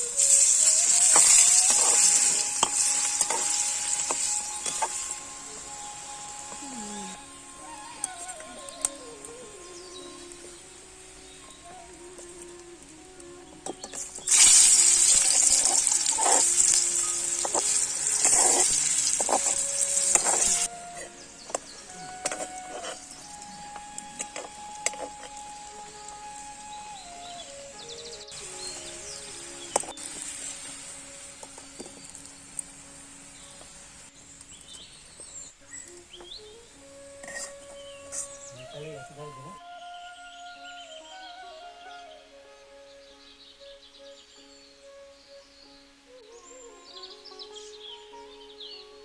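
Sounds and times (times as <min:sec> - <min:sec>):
food sizzling in hot oil: 0:00.0 - 0:08.9, 0:13.6 - 0:36.5
birds chirping: 0:00.0 - 0:49.0
faint background music note: 0:00.0 - 0:49.0
steady high hiss: 0:00.0 - 0:49.0.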